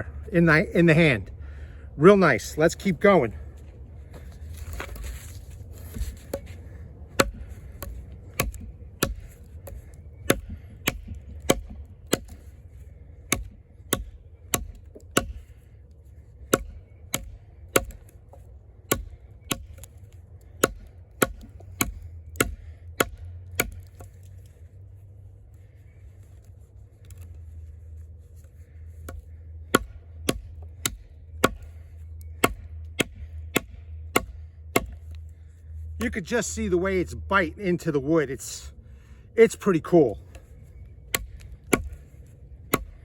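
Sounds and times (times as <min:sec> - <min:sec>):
knife chopping wood: 0:04.2 - 0:12.5, 0:13.2 - 0:15.6, 0:16.4 - 0:24.5, 0:29.0 - 0:35.2, 0:41.1 - 0:42.0, 0:42.7 - 0:43.0.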